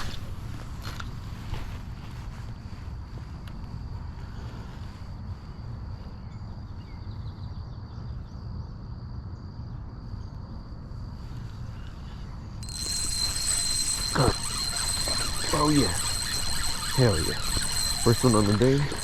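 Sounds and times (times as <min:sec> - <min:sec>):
thin steady high tone: 0:12.6 - 0:19.0.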